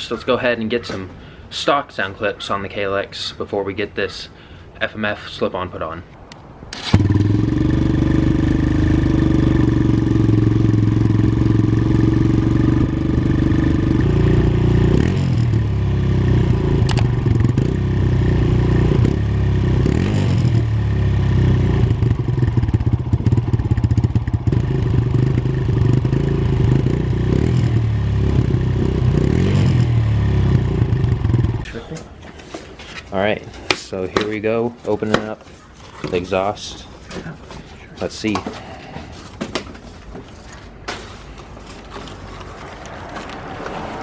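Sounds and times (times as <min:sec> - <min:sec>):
motorcycle engine idling and revving: 0:06.8 - 0:31.7.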